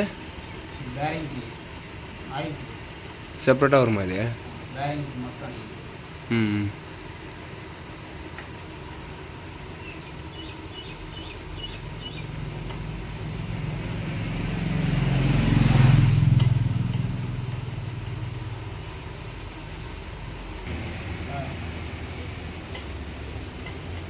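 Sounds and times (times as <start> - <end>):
vehicle engine droning past: 10.7 - 19.6, 20.6 - 24.0.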